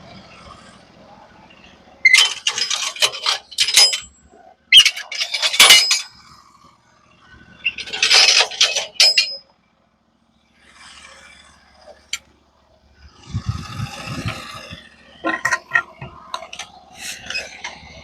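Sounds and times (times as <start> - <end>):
metal clanks and knocks: 2.0 - 4.1, 4.8 - 6.2, 7.6 - 9.4, 15.2 - 18.0
scraping rumble: 13.0 - 18.0.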